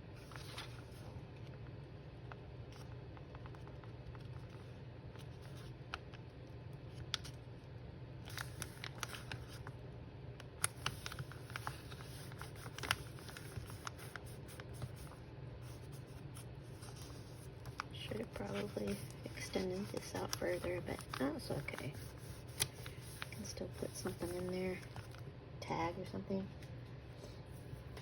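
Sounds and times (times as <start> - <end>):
steady low hum: 0.0 - 28.0
paper rustling and clicks: 8.3 - 9.7, 10.6 - 15.1, 16.8 - 25.2.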